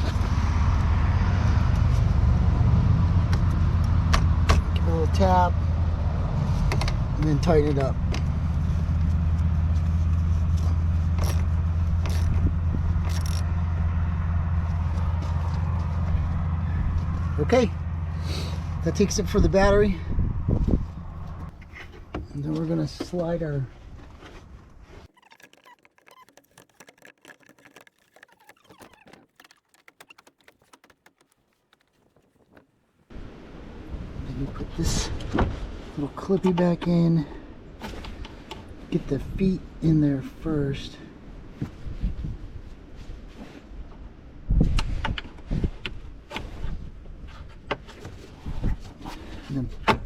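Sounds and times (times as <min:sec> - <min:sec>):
wrench metallic clicks and scrapes: 0:13.0 - 0:13.4
plastic air vent clicking and scraping: 0:25.1 - 0:32.7.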